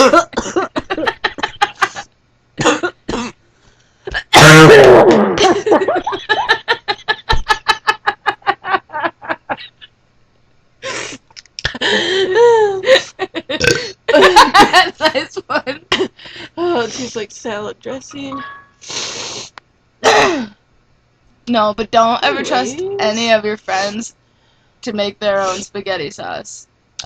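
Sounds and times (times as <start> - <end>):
women coughing: 0.0 - 1.1, 2.6 - 3.4, 13.6 - 14.5, 20.0 - 20.6
women laughing: 0.0 - 2.1, 5.4 - 9.9, 11.6 - 16.1.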